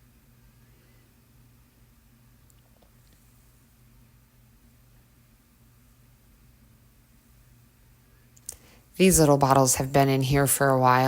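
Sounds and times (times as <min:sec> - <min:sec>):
faint low hum and hiss: 0:00.0 - 0:11.0.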